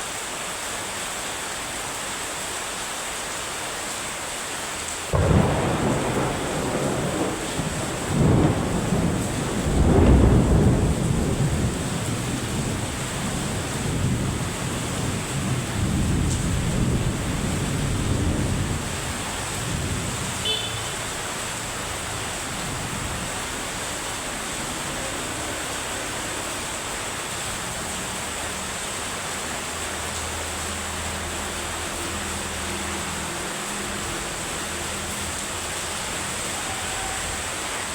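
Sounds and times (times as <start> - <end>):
heavy rain: 0.0 - 37.9
thunder rumbling: 5.1 - 30.6.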